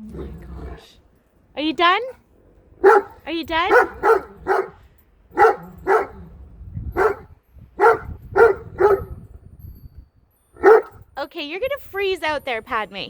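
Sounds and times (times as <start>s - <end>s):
dog barking: 2.8s - 6.2s, 6.9s - 9.2s, 10.6s - 11.0s.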